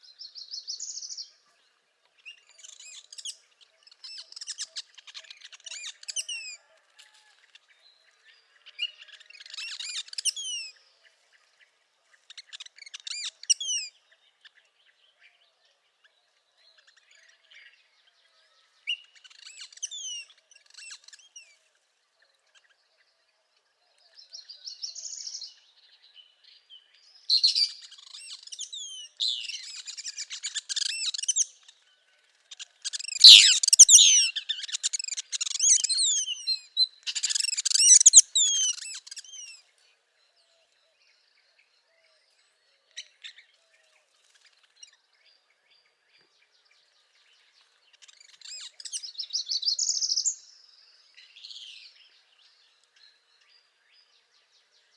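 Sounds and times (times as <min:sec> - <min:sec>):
bird singing high rapid phrases: 0:27.3 - 0:31.7, 0:32.5 - 0:39.6, 0:47.5 - 0:53.7.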